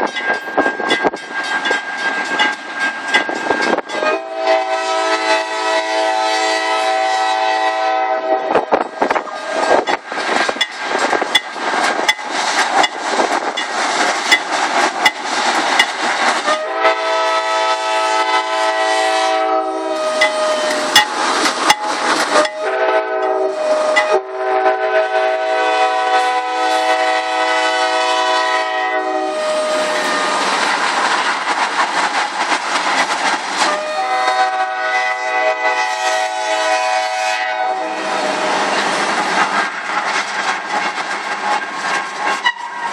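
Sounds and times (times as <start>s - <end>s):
train wheels clattering over rails: 0.0s - 5.5s, 8.5s - 18.3s, 19.3s - 24.2s, 25.7s - 36.4s, 37.8s - 42.9s
locomotive air horn blasts: 3.9s - 9.8s, 16.4s - 21.1s, 21.7s - 30.4s, 33.6s - 38.5s, 42.4s - 42.9s.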